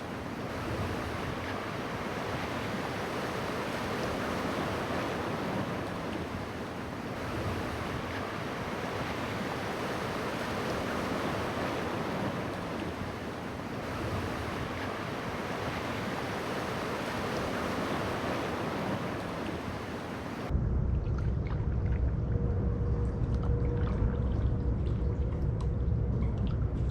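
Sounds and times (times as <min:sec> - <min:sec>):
ocean surf washing on beach: 0:00.0 - 0:20.5
deep muffled rumble: 0:20.5 - 0:26.9.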